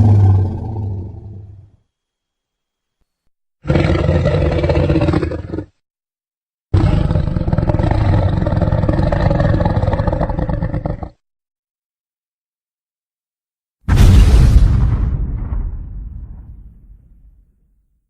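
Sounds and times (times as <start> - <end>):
monster roar: 0.0 - 1.6, 6.7 - 11.2.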